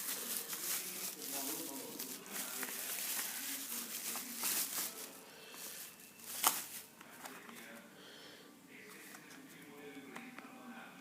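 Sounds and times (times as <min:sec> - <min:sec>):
packaging rustling and crinkling: 0:00.0 - 0:07.7.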